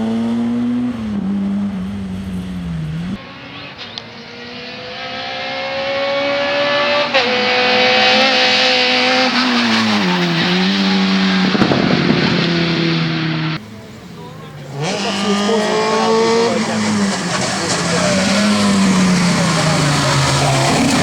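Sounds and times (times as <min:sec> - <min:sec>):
rally car engine at full throttle: 0:00.0 - 0:21.0
tyre noise: 0:08.9 - 0:21.0.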